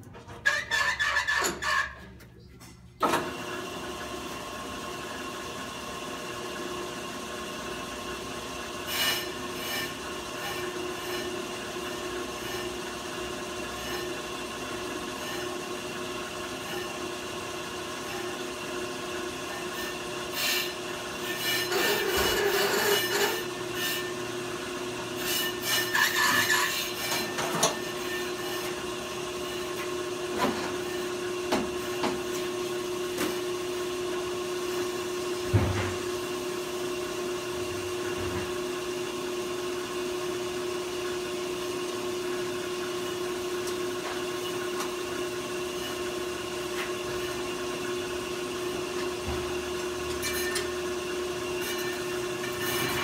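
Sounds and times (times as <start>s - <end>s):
brake lathe humming: 3.2s - 53.0s
rough scraping of cutting: 8.9s - 11.4s, 12.4s - 12.8s, 13.6s - 14.2s, 19.5s - 24.1s, 25.2s - 28.8s, 50.2s - 50.6s, 51.6s - 53.0s.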